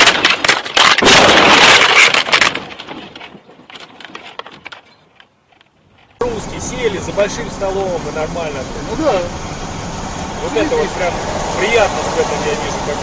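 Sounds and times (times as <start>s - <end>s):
car crash crunching: 0.0s - 4.8s
clicks and rattles: 0.0s - 6.2s.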